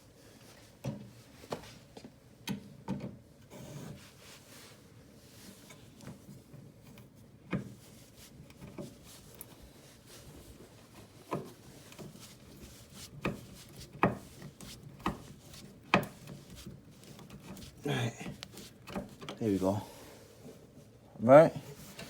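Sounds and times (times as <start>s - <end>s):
faint rubbing: 7.8s - 20.7s.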